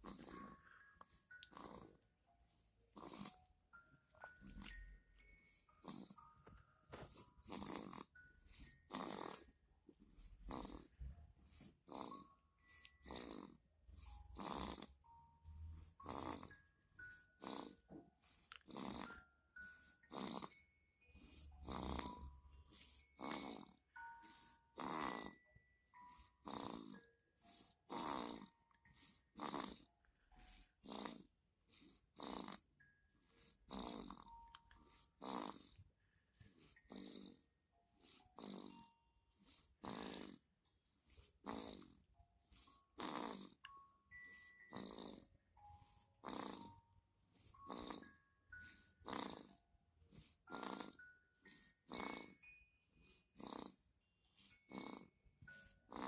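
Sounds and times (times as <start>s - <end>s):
person snoring: 0.0s - 2.0s, 3.0s - 3.4s, 4.3s - 6.3s, 7.0s - 11.0s, 11.6s - 32.6s, 33.3s - 35.8s, 36.6s - 40.4s, 41.1s - 42.0s, 42.6s - 46.8s, 47.4s - 49.6s, 50.5s - 53.8s, 54.4s - 56.0s
soft chime-like notes: 0.0s - 7.5s, 43.6s - 56.0s.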